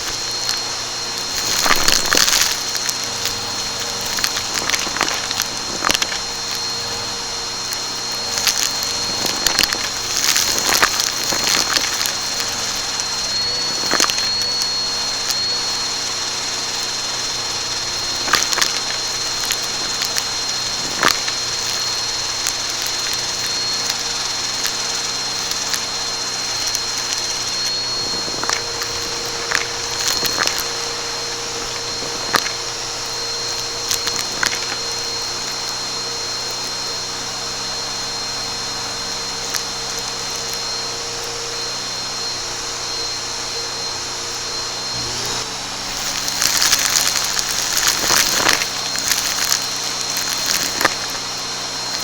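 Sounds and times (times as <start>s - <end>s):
brushroll crackling on debris: 0.0s - 42.2s, 43.0s - 52.0s
vacuum cleaner whining: 0.0s - 52.0s.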